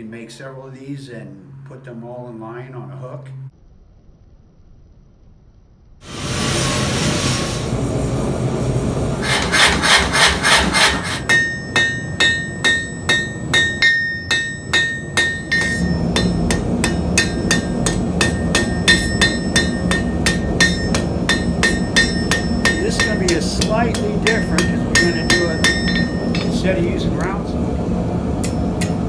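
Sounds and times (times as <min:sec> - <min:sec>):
steady rushing noise: 0:06.1 - 0:29.0
hammer striking steel on anvil: 0:09.2 - 0:27.7, 0:28.3 - 0:29.0.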